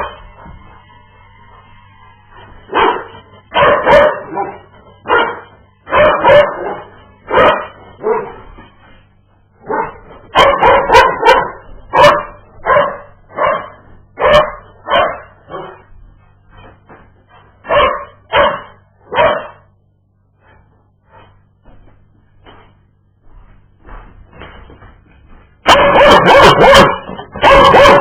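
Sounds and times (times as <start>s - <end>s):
dog barking: 2.7s - 8.4s, 9.6s - 15.9s, 17.6s - 19.7s, 25.6s - 28.0s.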